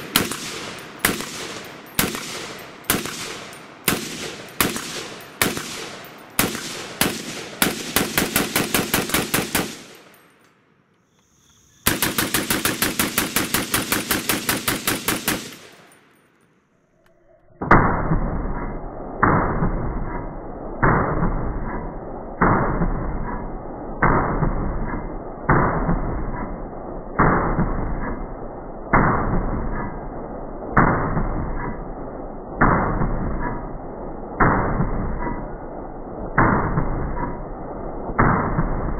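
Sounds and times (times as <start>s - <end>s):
rifle shots: 0.0s - 10.2s, 11.8s - 16.0s, 36.3s - 38.9s.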